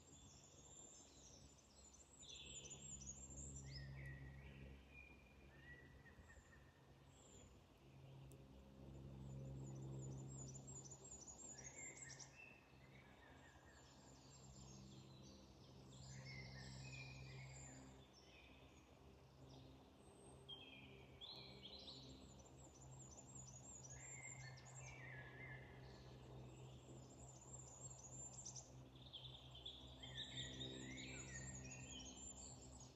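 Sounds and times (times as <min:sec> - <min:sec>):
songbirds singing: 0:09.1 - 0:32.9.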